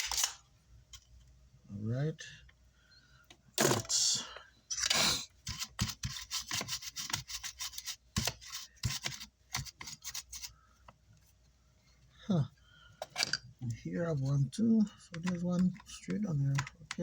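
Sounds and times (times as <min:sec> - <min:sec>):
hand tool scraping circuit board: 0:05.4 - 0:10.5.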